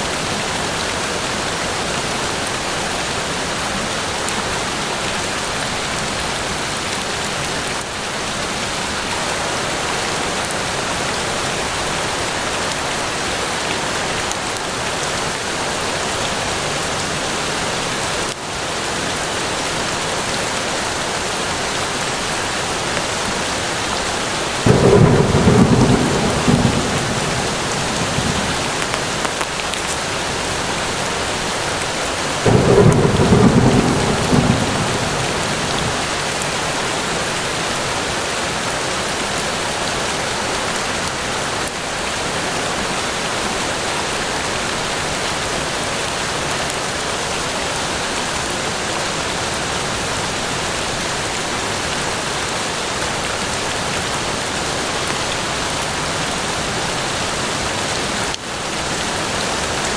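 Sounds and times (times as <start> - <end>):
steady rain in forest: 0.0 - 59.9
loud thunder rolling: 24.6 - 29.6, 32.4 - 36.8.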